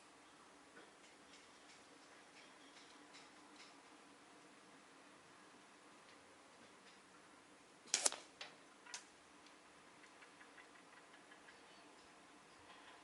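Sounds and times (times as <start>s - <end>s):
sharp clicks: 7.9s - 8.3s.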